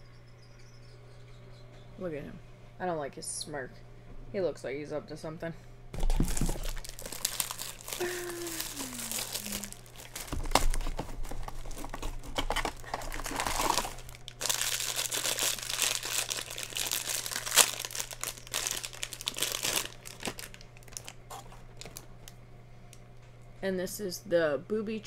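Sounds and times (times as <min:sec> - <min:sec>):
plastic packaging torn open: 0:06.0 - 0:22.1.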